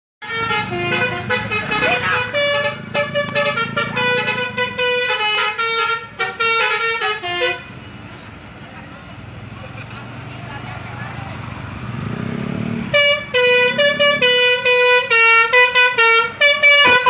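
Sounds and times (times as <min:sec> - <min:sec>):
bus musical horn tune: 0:00.2 - 0:08.0, 0:12.9 - 0:17.0
bus engine running: 0:00.2 - 0:17.0.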